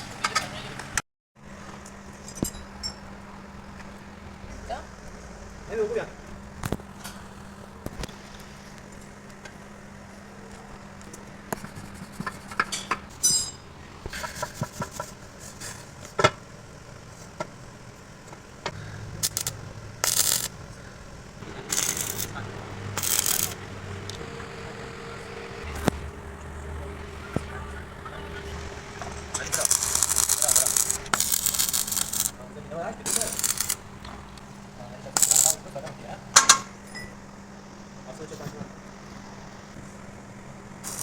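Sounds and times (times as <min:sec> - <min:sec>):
faint hum: 0:01.4 - 0:41.0
metal tools clinking and scraping: 0:12.7 - 0:13.6
short hissing bursts: 0:18.8 - 0:20.6, 0:21.6 - 0:23.6, 0:29.6 - 0:32.4, 0:33.1 - 0:33.8, 0:35.2 - 0:35.6.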